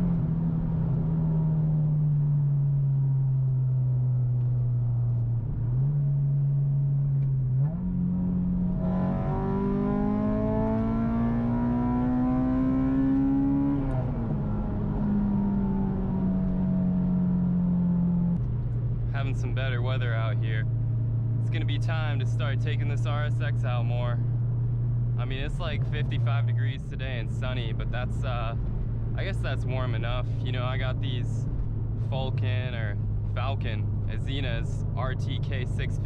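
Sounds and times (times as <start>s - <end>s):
car engine revving: 4.4s - 18.5s.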